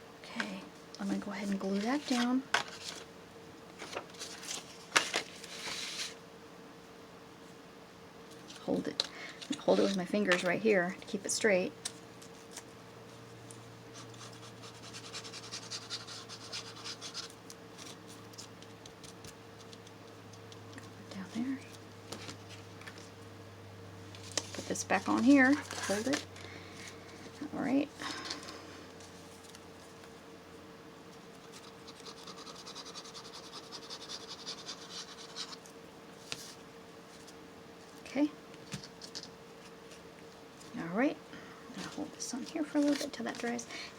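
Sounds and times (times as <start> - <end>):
low electrical hum: 0.0 - 43.9
fingers rubbing paper: 13.9 - 17.3, 31.4 - 35.6.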